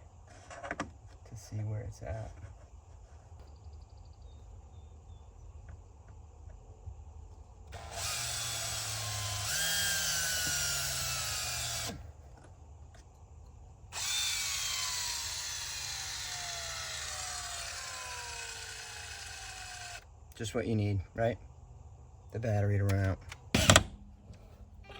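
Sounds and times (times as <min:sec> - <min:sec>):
cordless drill motor whine: 0:07.7 - 0:12.0, 0:13.9 - 0:20.1.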